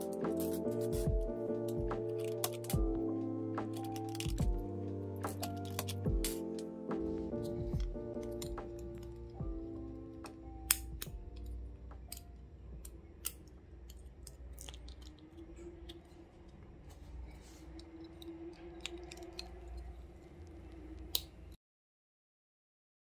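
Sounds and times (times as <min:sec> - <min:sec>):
keycaps clicking: 0:03.6 - 0:04.6, 0:05.2 - 0:06.7.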